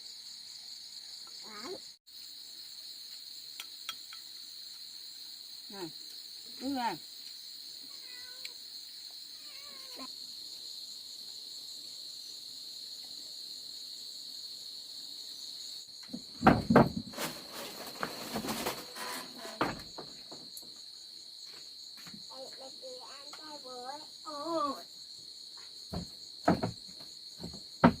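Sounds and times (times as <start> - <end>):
crickets chirring: 0.0 - 28.0
loud knocks and clattering: 16.1 - 17.4, 25.9 - 28.0.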